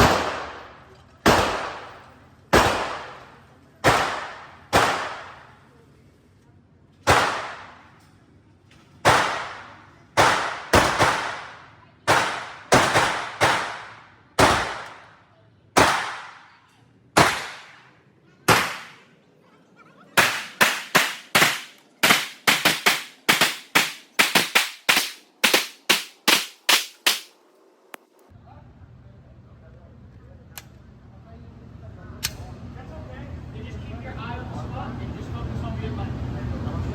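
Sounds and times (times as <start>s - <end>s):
handgun shots with echo: 0.0s - 5.5s, 7.1s - 7.9s, 9.0s - 15.1s, 15.8s - 16.6s, 17.2s - 17.8s, 18.5s - 19.0s.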